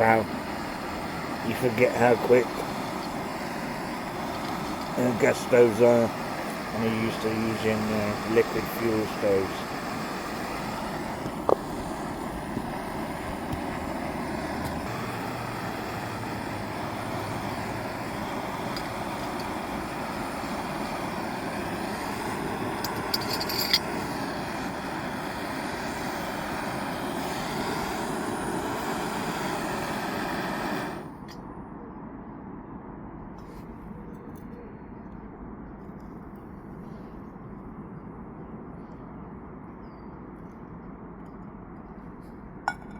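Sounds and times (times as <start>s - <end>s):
gas stove burner hissing: 0.0s - 31.4s
metallic clatter: 22.8s - 23.9s.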